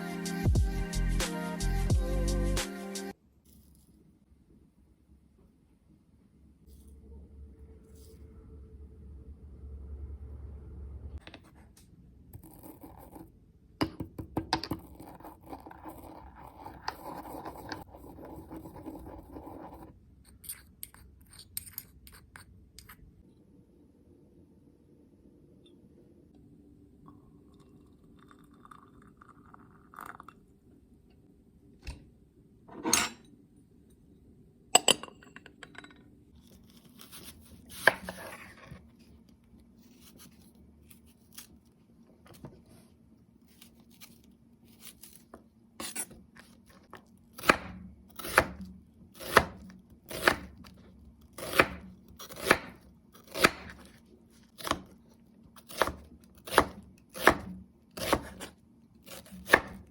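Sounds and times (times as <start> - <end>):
knife chopping on cutting board: 37.0 - 38.6, 47.4 - 50.7, 51.4 - 53.9, 54.6 - 55.0, 55.6 - 59.9.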